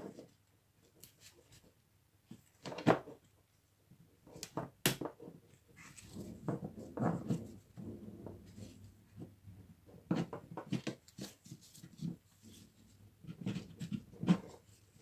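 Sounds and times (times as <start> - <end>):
tool parts knocking and scraping: 4.5 - 15.0.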